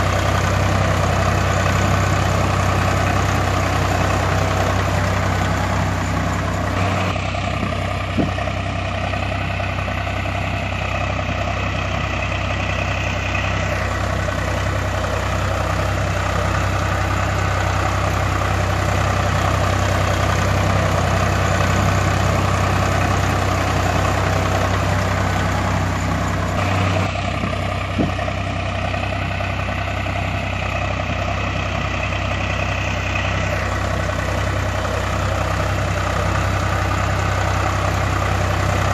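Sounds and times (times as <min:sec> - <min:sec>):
engine-like drone idling: 0:00.0 - 0:38.9.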